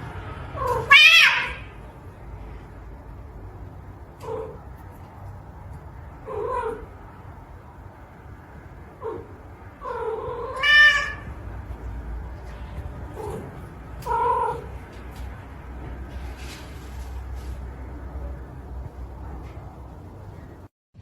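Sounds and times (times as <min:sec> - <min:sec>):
cat meowing: 0:00.6 - 0:01.7, 0:09.0 - 0:11.4, 0:13.2 - 0:14.8.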